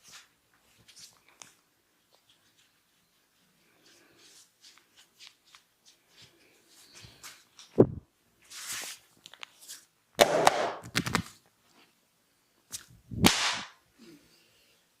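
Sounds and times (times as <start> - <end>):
hands slapping and cracking: 10.2 - 11.4, 12.7 - 13.8.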